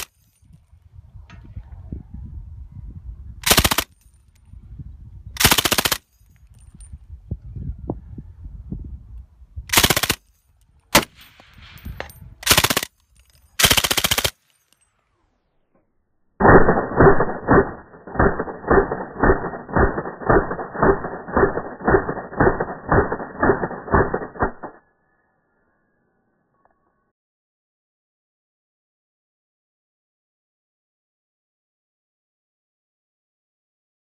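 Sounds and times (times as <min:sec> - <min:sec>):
machine gun bursts: 0:03.4 - 0:03.9, 0:05.4 - 0:06.0, 0:09.7 - 0:10.2, 0:12.4 - 0:12.9, 0:13.6 - 0:14.4, 0:16.4 - 0:24.7.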